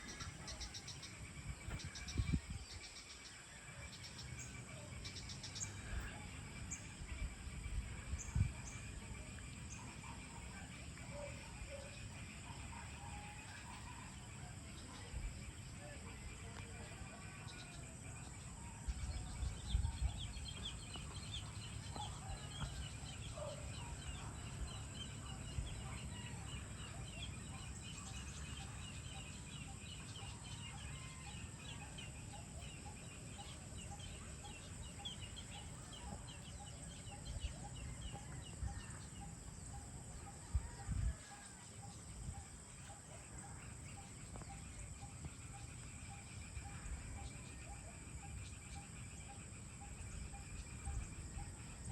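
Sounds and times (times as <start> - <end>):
birds calling: 0.0 - 9.0.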